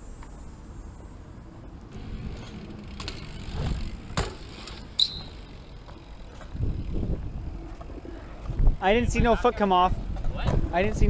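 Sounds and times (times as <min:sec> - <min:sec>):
bike tyres rolling on concrete: 0:00.0 - 0:11.0
bike landing knocks: 0:02.0 - 0:06.6
high squeal: 0:04.7 - 0:05.6.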